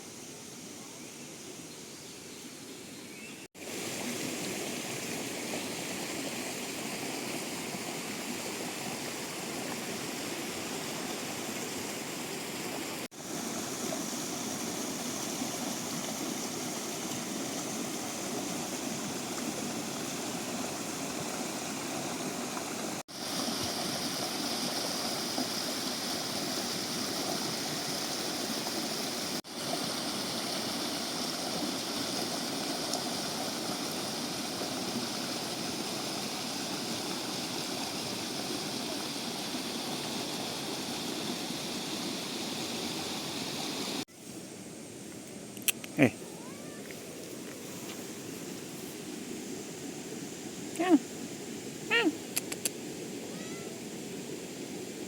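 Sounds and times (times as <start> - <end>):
mountain stream rushing: 3.6 - 44.1.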